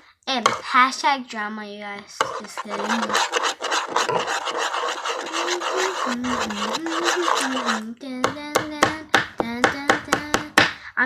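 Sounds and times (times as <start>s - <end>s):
slime being stirred rasping: 0.5s - 0.7s, 2.2s - 10.2s.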